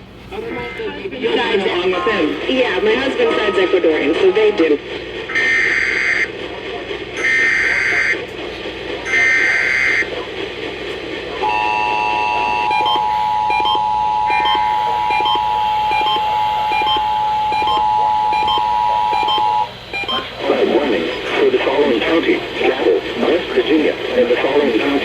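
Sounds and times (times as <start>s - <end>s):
two-tone attention signal: 11.4s - 20.3s.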